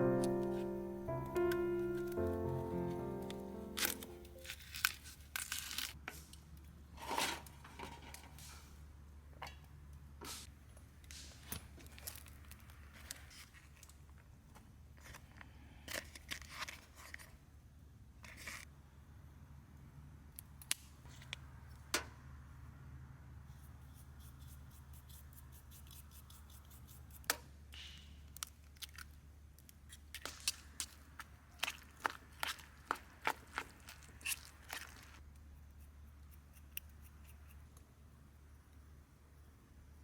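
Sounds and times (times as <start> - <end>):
small objects rustling: 30.3 - 35.2
light clicks and snips: 34.2 - 37.9.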